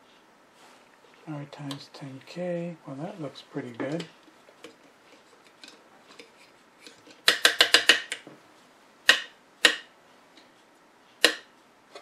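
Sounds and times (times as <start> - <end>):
sharp mechanical clicks: 7.2 - 8.2.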